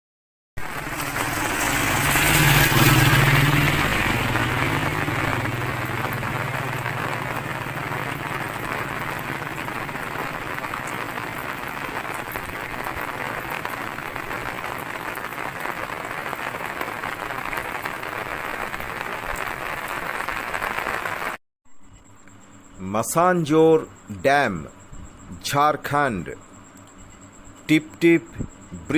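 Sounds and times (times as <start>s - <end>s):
low hum: 0.6s - 11.0s
rain falling: 0.6s - 21.4s.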